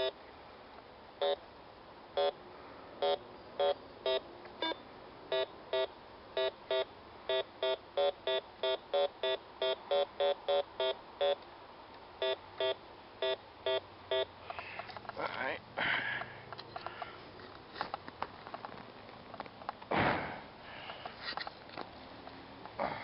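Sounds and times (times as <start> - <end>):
metal detector beeping: 1.2 - 1.4, 2.2 - 2.4, 3.0 - 11.4, 12.2 - 14.3.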